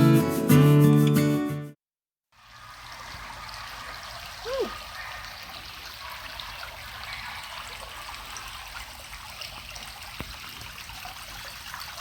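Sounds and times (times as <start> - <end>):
stream trickling: 2.3 - 12.0.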